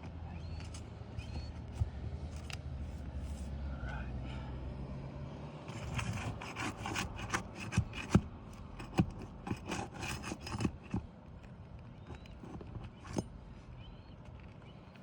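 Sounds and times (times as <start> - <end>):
tool scraping roof shingles: 5.7 - 11.1
sharp taps and knocks: 6.0 - 11.1.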